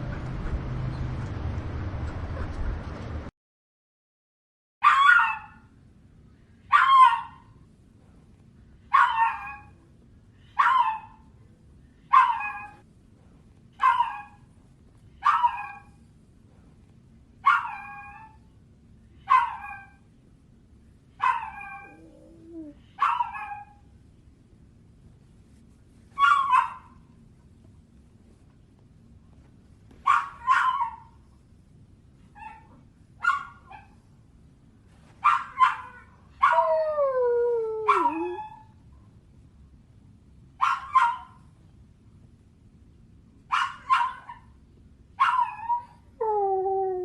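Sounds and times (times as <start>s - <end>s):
dog whining yelps: 4.8s - 5.6s, 6.7s - 7.4s, 8.9s - 9.8s, 10.5s - 11.2s, 12.1s - 12.8s, 13.8s - 14.4s, 15.2s - 15.9s, 17.4s - 18.4s, 19.3s - 20.0s, 21.2s - 23.8s, 26.2s - 26.9s, 30.1s - 31.1s, 35.2s - 37.1s, 37.8s - 38.7s, 43.5s - 44.5s, 45.2s - 47.0s.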